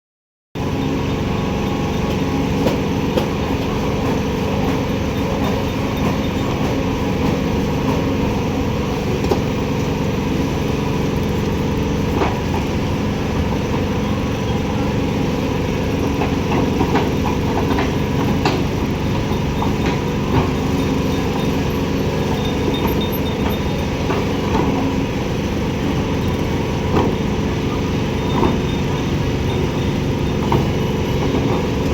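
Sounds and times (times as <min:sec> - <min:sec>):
diesel engine running: 0:00.6 - 0:31.9.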